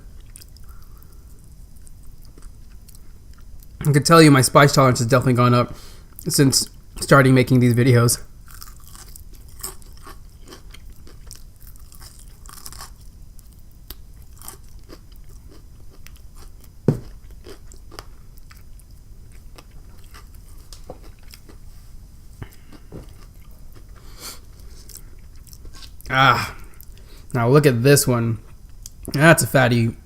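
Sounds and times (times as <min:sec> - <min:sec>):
crunchy chewing of fried food: 0:00.0 - 0:03.8, 0:08.3 - 0:26.1.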